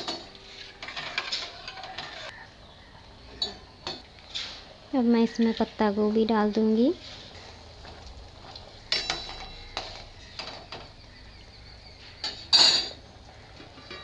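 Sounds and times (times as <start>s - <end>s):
metal utensil scraping a pan: 0.0s - 2.4s, 8.9s - 11.0s, 13.6s - 14.0s
ringing metallic clatter: 8.9s - 10.9s.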